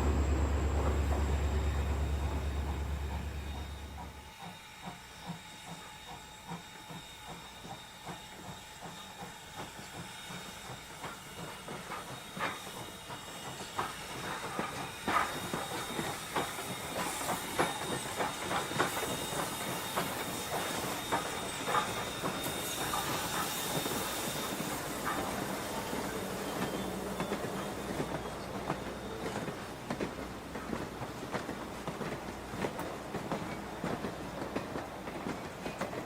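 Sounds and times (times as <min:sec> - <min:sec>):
train hiss on rails: 0:00.0 - 0:36.0.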